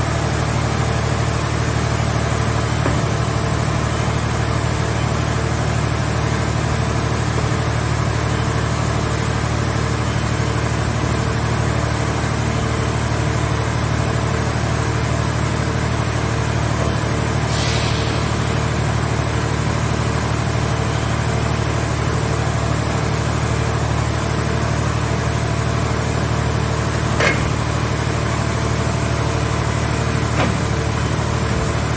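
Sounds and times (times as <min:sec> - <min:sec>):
hydraulic power unit humming: 0:00.0 - 0:31.9
short hiss: 0:17.4 - 0:18.9
sharp metal clank: 0:27.2 - 0:27.6.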